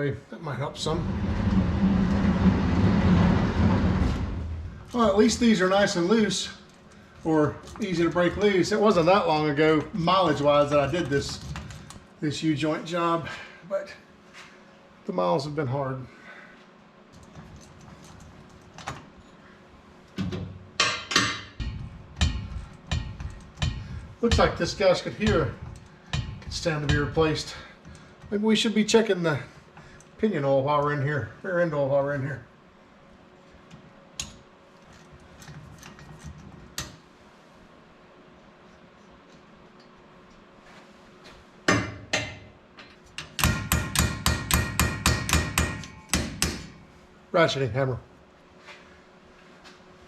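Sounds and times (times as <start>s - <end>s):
metal clanks and knocks: 20.2s - 27.3s
ratchet hammering on metal: 20.8s - 27.4s, 43.2s - 46.8s.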